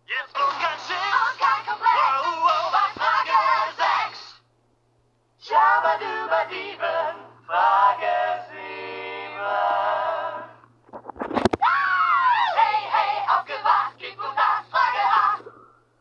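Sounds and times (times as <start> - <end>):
processed synthetic singing voice: 0.1 - 4.4, 12.4 - 15.6.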